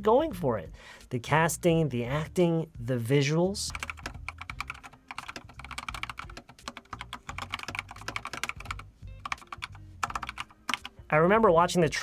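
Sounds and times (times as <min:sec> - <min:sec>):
fast typing on a keyboard: 0:03.7 - 0:11.0.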